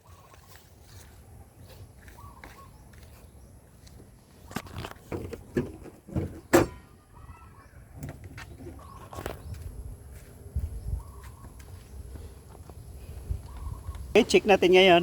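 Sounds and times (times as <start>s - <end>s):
car hood clunks and clicks: 5.1s - 6.8s.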